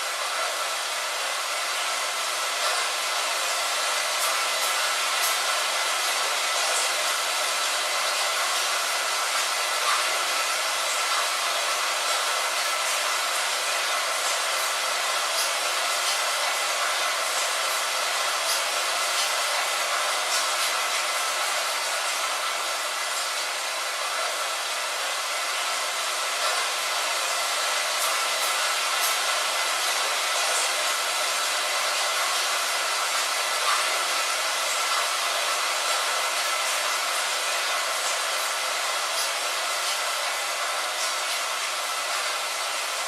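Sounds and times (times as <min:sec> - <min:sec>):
rain on a window: 0:00.0 - 0:43.0.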